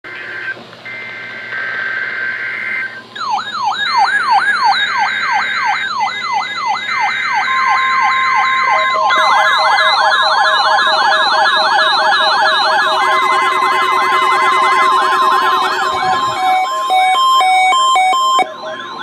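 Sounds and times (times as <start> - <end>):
faster siren tone: 0.2 - 19.0
siren-like alert tone: 0.2 - 19.0
beeping tone: 6.1 - 19.0
screechy digital data bursts: 7.2 - 18.5
steady tone: 9.0 - 19.0.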